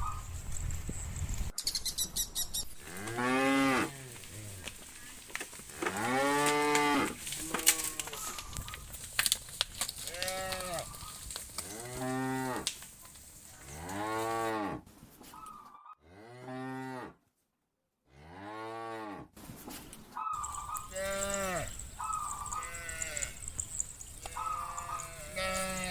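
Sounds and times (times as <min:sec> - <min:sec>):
cattle mooing: 0:20.4 - 0:25.9.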